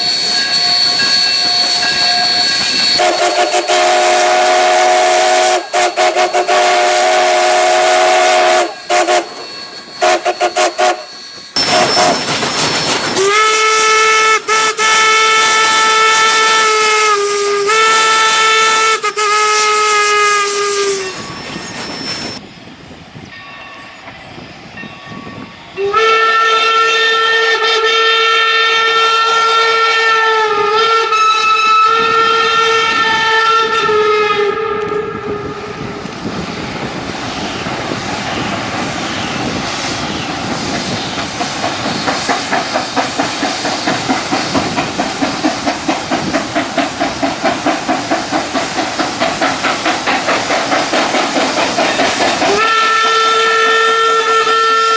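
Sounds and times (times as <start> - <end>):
steam locomotive whistle: 0.0 - 12.5, 13.1 - 22.4, 25.8 - 35.9, 52.4 - 54.9
steam hissing: 0.0 - 23.3, 35.1 - 54.9
faint rhythmic train beat: 0.0 - 54.9.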